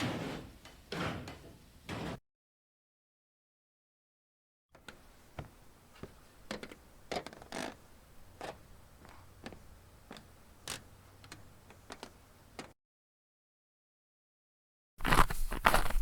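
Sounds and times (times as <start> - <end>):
footsteps clicking and scuffing: 4.8 - 7.7, 15.0 - 16.0.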